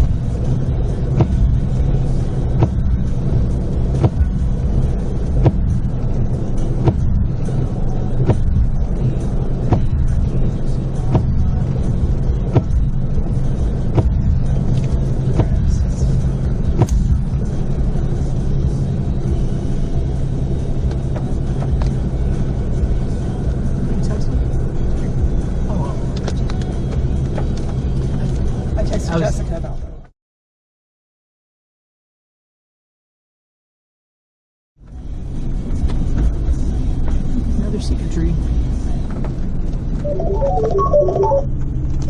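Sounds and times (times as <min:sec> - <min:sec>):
low vehicle rumble: 0:00.0 - 0:29.0.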